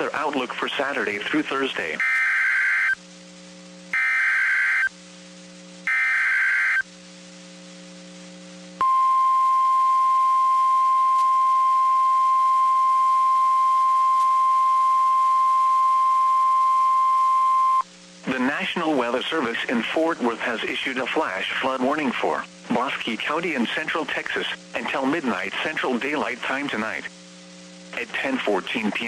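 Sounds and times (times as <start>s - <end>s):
steady warning alarm tone: 2.0s - 3.0s, 3.9s - 4.9s, 5.9s - 6.8s
warbling digital data bursts: 3.9s - 4.9s, 5.8s - 6.8s.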